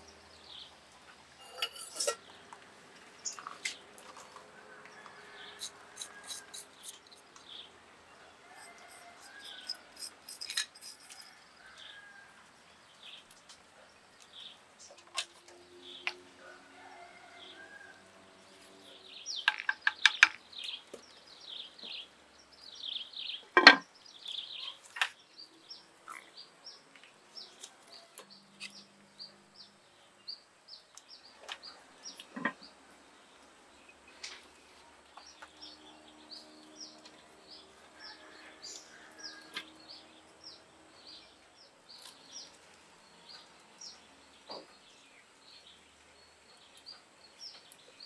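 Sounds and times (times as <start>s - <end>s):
small bird chirping: 8.6s - 11.4s
sharp clicks and knocks: 19.3s - 21.0s.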